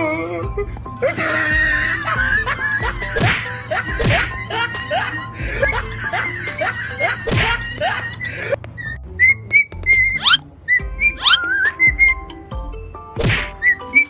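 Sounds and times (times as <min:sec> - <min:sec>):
music with pulsing bass: 0:00.4 - 0:13.8
sharp smacks: 0:03.2 - 0:04.3, 0:13.2 - 0:13.8.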